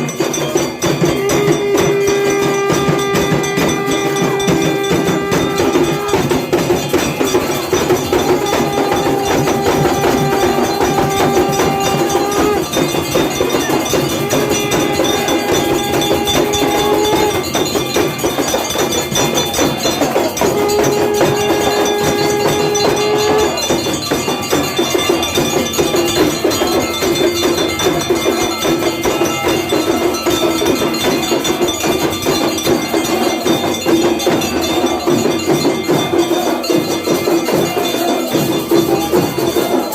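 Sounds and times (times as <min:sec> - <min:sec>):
bells and percussion clanging: 0:00.0 - 0:39.9
long held tones: 0:00.9 - 0:18.2.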